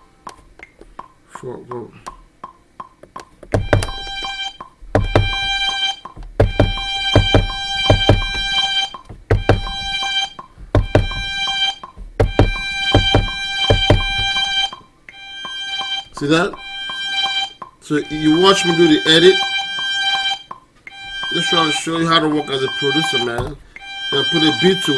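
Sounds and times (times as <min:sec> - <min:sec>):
chopped pitched sample tone: 0:01.7 - 0:24.9
deep kick drum: 0:03.5 - 0:14.6.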